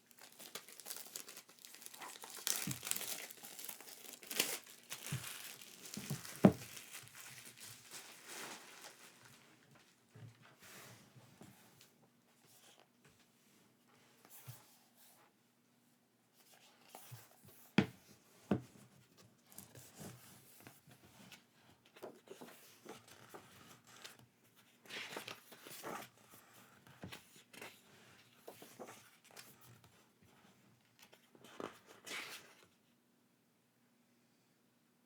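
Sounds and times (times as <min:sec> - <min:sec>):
packaging rustling and scraping: 0:00.0 - 0:09.4.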